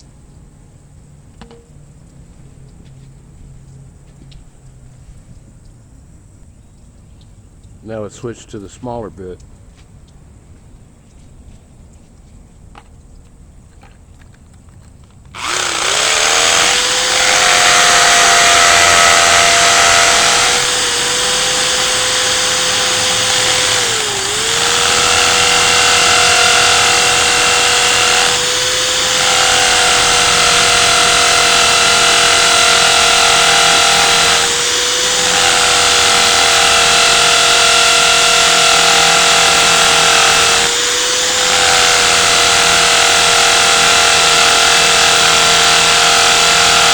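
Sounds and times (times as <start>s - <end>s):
electric drill whining: 15.4s - 46.9s.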